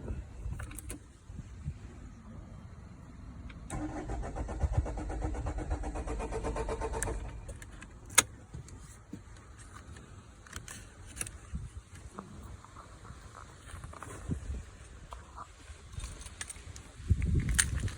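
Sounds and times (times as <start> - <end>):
starter motor cranking engine: 3.7 - 7.7.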